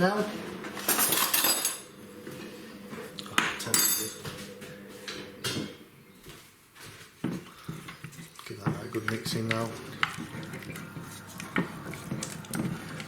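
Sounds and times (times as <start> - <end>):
utensil scraping a mixing bowl: 7.4 - 13.0.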